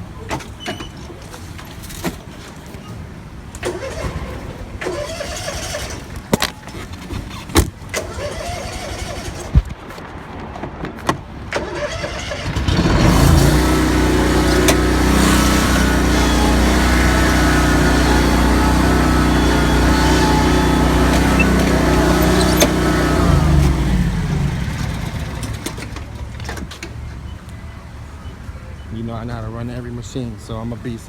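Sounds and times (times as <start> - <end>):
vehicle engine running: 12.5 - 26.5.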